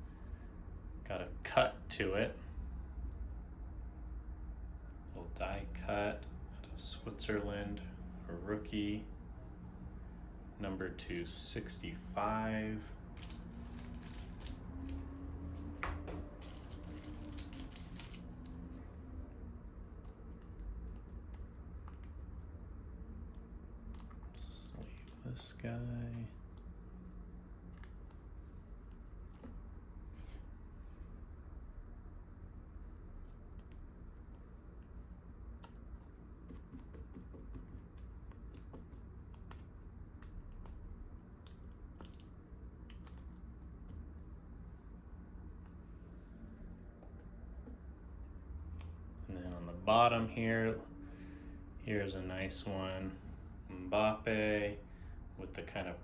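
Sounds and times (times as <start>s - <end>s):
low steady hum: 0.0s - 56.0s
cards rustling and clicking: 13.0s - 26.8s, 33.0s - 44.3s.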